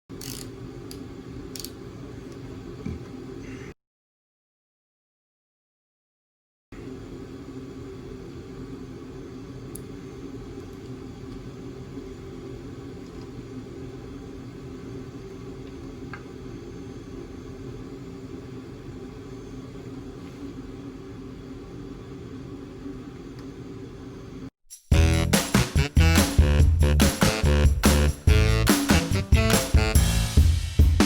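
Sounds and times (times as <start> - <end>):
steady low hum: 6.8 - 25.4.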